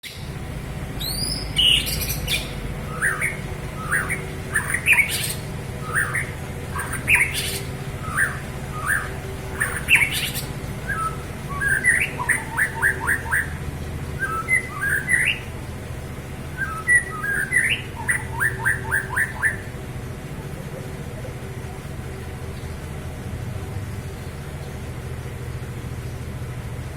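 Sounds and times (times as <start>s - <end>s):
steady low hum: 0.0s - 26.9s
bird calling sharp notes: 1.0s - 15.6s, 16.4s - 19.8s.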